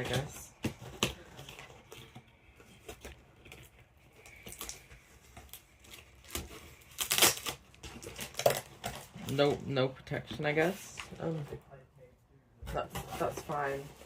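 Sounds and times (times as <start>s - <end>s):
packing material rustling: 0.0s - 9.6s.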